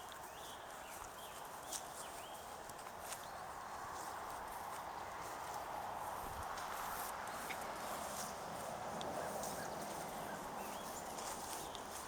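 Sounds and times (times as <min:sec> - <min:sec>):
bird chirp: 0:00.0 - 0:03.6, 0:09.1 - 0:12.0.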